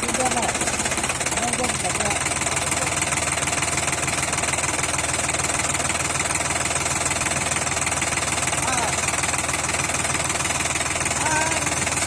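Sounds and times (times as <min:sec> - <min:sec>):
tractor diesel engine idling: 0:00.0 - 0:12.0.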